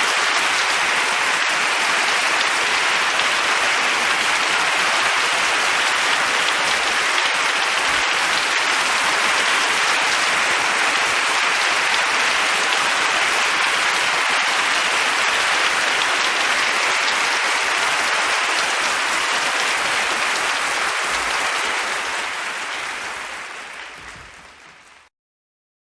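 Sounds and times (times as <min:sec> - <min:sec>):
crowd applause: 0:00.0 - 0:25.1.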